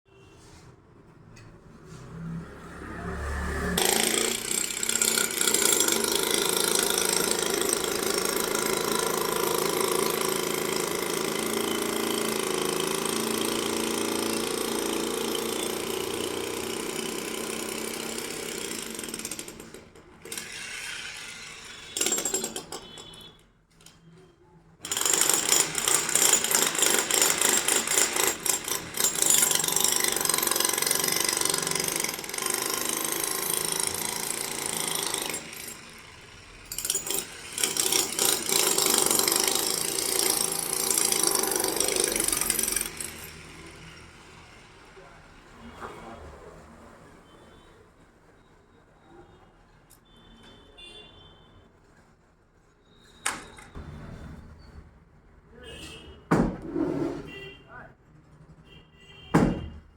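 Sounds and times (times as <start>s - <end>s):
hard hammering rattle: 3.8s - 20.4s.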